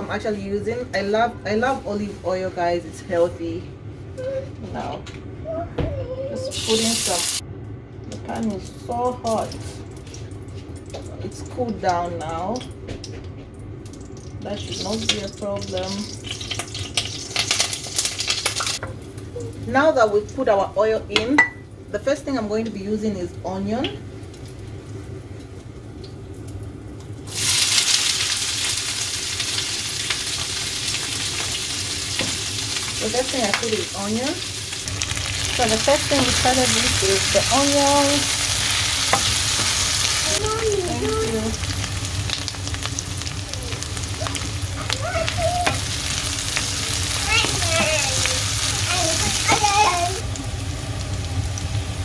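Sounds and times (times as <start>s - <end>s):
onions sizzling in oil: 6.5s - 7.4s, 14.0s - 18.9s, 27.2s - 52.0s.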